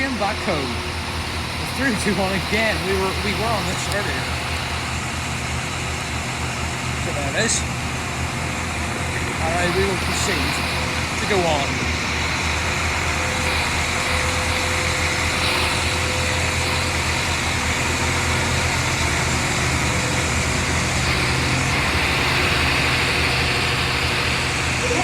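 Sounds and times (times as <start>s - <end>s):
train engine humming: 0.0s - 25.0s.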